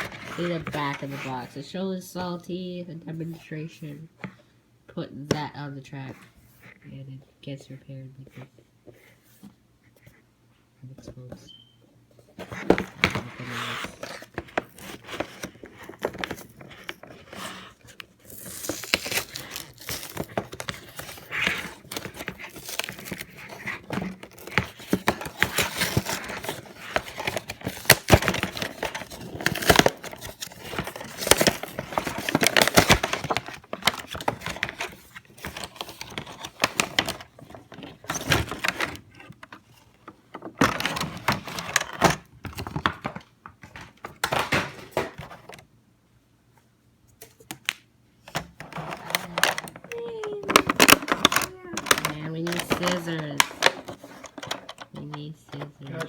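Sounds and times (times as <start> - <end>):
packaging crinkling and tearing: 12.6 - 39.3, 48.6 - 56.0.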